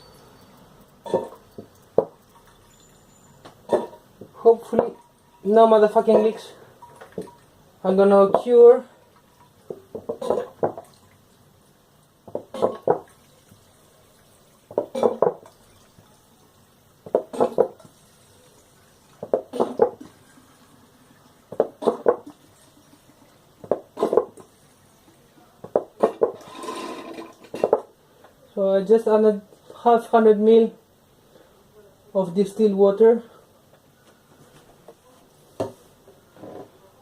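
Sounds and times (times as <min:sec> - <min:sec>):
water pouring into reservoir: 0:00.0 - 0:03.4, 0:12.8 - 0:16.4, 0:17.8 - 0:19.3.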